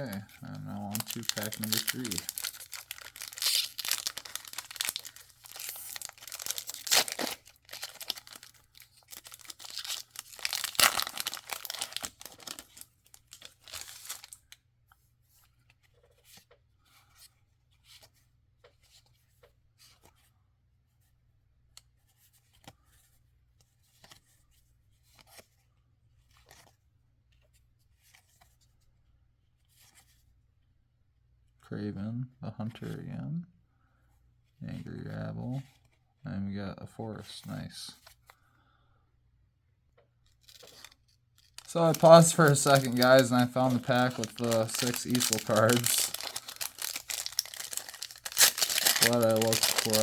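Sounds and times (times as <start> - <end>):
cards clicking and rustling: 0.0 - 14.4, 40.5 - 50.0
foil wrapper tearing and crinkling: 0.0 - 14.4, 40.4 - 50.0.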